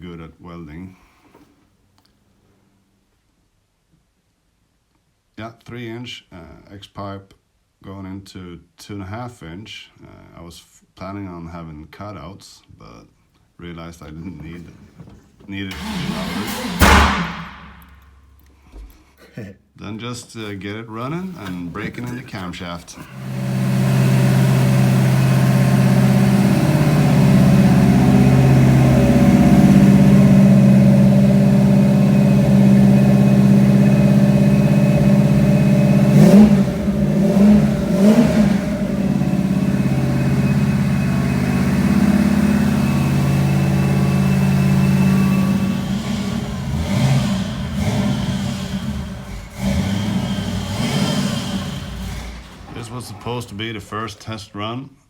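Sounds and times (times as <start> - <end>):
car engine fast idle revving: 15.7 - 18.2, 21.8 - 53.5.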